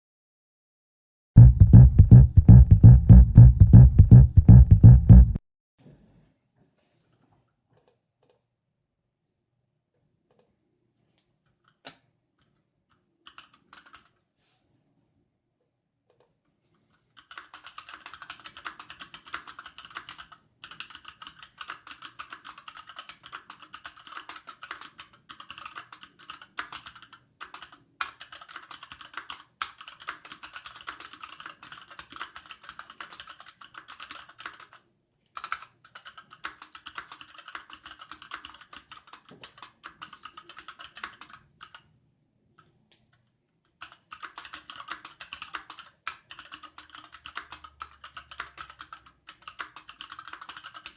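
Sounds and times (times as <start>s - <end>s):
mechanical keyboard typing: 13.2s - 14.2s, 17.2s - 34.8s, 35.4s - 41.9s, 43.8s - 50.9s.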